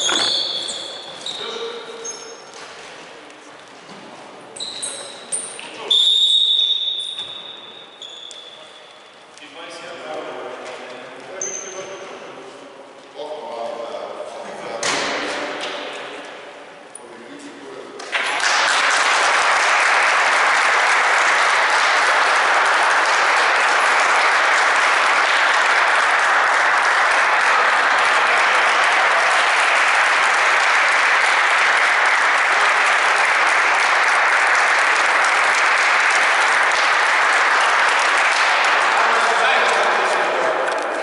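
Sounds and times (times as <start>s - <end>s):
crowd applauding: 18.1s - 41.0s.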